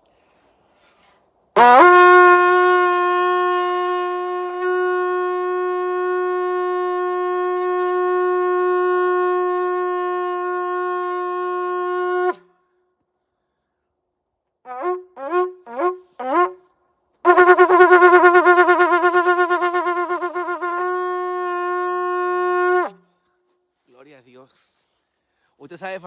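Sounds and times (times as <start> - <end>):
shofar blast: 1.6 - 12.4, 14.7 - 16.6, 17.2 - 23.0.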